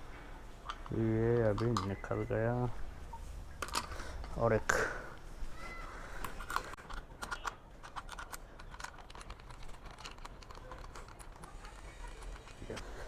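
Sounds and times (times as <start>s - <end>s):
hand tools and metal parts clicking: 0.6s - 2.6s, 3.5s - 4.9s, 6.1s - 13.0s.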